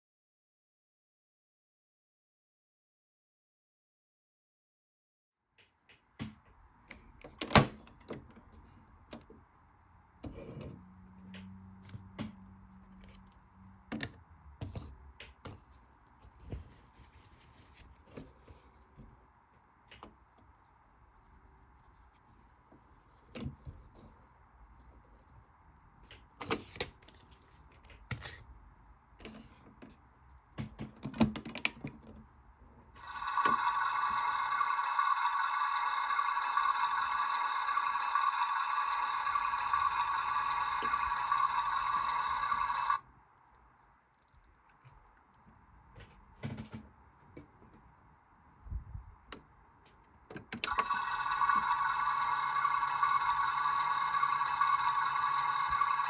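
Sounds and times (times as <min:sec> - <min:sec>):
steady electronic tone: 0:33.0 - 0:43.0.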